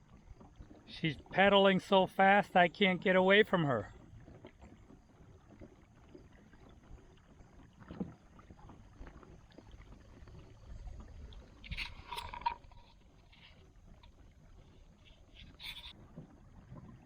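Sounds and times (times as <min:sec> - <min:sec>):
water against kayak hull: 0:00.0 - 0:17.0
rustle: 0:15.0 - 0:15.9.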